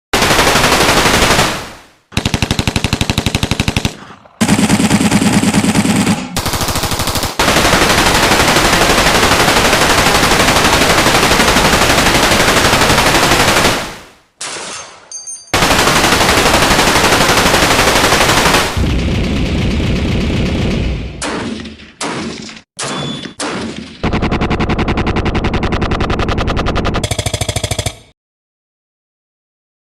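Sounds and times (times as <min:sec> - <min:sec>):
machine gun bursts: 0:00.2 - 0:14.0, 0:15.5 - 0:18.8.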